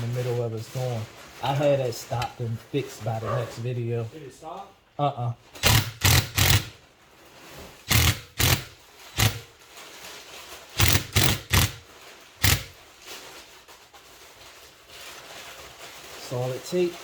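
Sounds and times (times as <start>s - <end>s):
packaging rustling and tearing: 0.0s - 2.8s, 6.0s - 17.0s.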